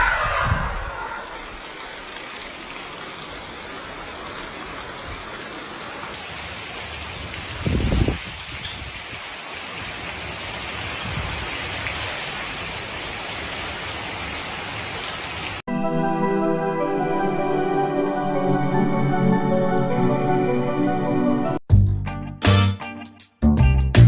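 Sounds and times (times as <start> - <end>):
rain pouring: 0.0 - 15.7
ambient music with sustained tones: 15.7 - 21.6.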